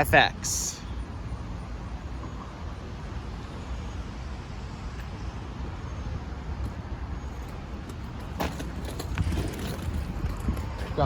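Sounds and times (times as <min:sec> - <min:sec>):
low rumble of vehicle noise: 0:00.0 - 0:11.0.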